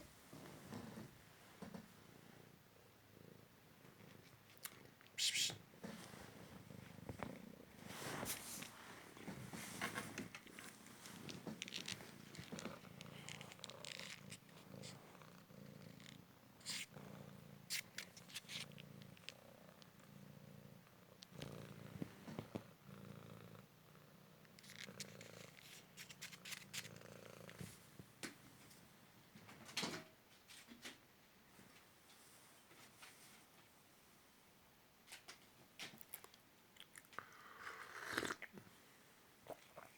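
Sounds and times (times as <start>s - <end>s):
cat purring: 0.0s - 29.2s, 37.0s - 39.9s
sharp clicks and rustles: 9.7s - 14.5s.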